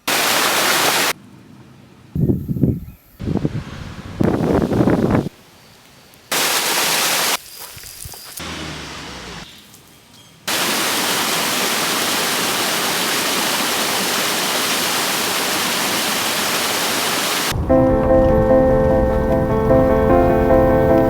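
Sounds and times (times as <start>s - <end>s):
waterfall rushing: 0.0s - 1.2s, 10.5s - 21.0s
music: 17.7s - 21.0s.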